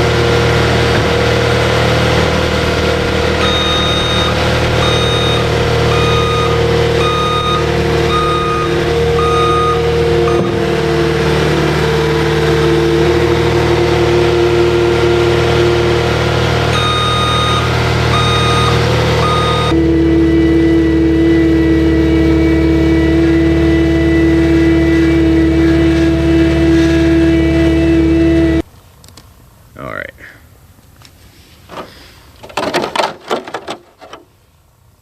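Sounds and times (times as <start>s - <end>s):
engine-like hum: 0.0s - 32.6s
reversing alarm beeps: 3.4s - 10.6s, 16.8s - 19.8s.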